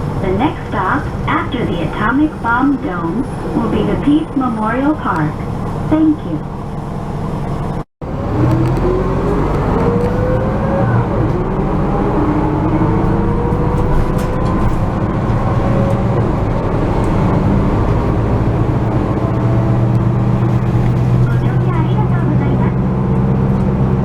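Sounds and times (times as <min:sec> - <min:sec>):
bus engine humming and whining: 0:00.0 - 0:24.0.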